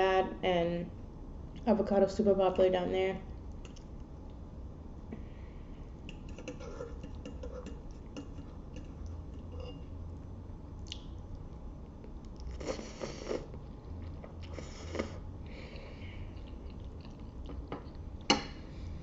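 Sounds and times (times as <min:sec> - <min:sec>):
person chewing food: 0:10.8 - 0:18.3.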